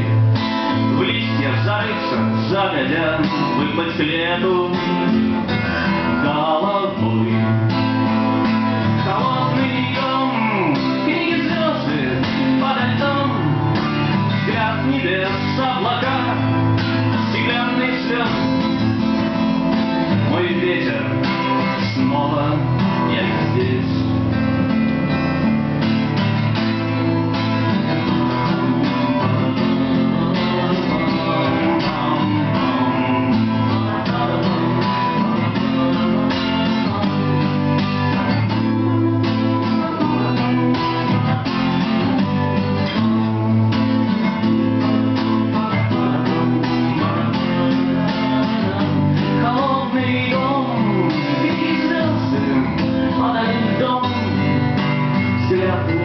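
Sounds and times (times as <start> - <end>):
lead guitar line: 0.0 - 56.0
strummed acoustic guitar chords: 0.0 - 56.0.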